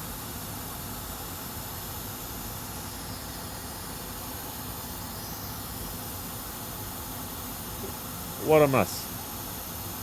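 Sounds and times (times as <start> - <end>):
hot air blower hissing: 0.0 - 10.0.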